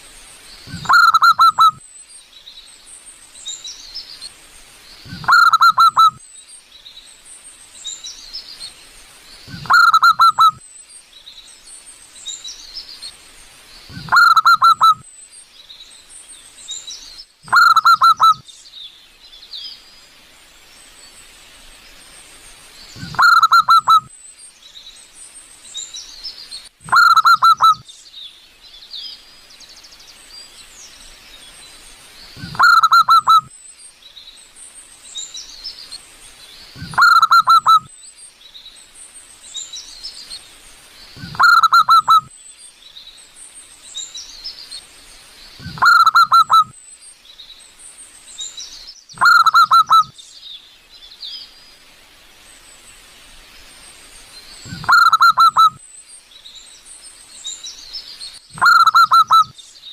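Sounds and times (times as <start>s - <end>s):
small birds chirping faintly: 0.0s - 59.9s
dove cooing: 0.7s - 1.8s, 5.1s - 6.2s, 9.5s - 10.6s, 13.9s - 15.0s, 23.0s - 24.0s, 32.4s - 33.5s, 36.8s - 37.8s, 41.2s - 42.3s, 45.6s - 46.7s, 54.7s - 55.8s, 58.6s - 59.5s.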